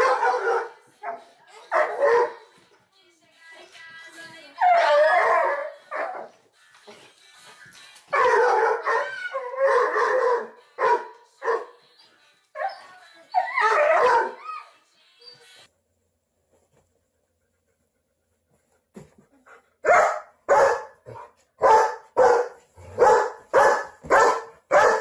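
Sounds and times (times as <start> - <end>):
dog barking and howling: 0.0 - 2.4, 4.6 - 6.3, 8.1 - 11.7, 12.6 - 14.7, 19.8 - 25.0.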